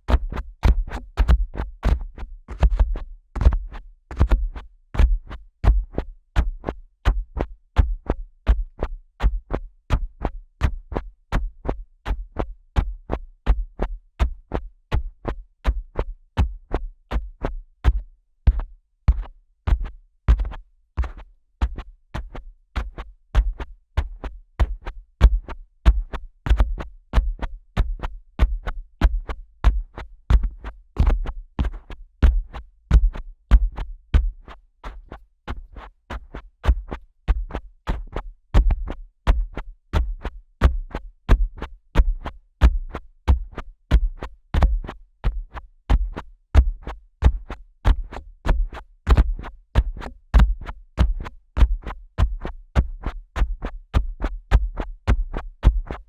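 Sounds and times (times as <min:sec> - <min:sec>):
muffled thumps with clicks: 0:00.1 - 0:04.4, 0:17.9 - 0:22.4, 0:28.4 - 0:35.8.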